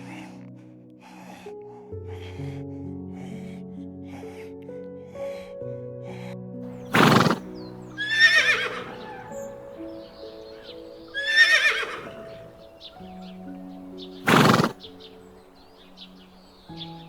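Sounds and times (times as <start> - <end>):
soft background music: 0.0 - 17.0
horse whinnying: 6.8 - 13.1, 13.9 - 15.2.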